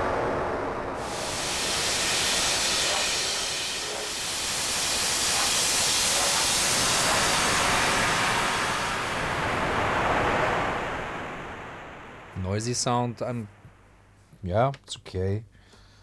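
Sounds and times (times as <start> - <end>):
hissing synthesized noise: 1.0 - 10.0.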